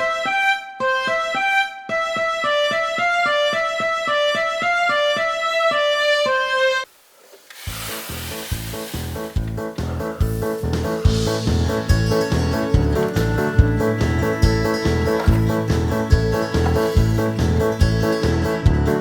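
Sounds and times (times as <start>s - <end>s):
music with steady beat: 9.3s - 19.0s.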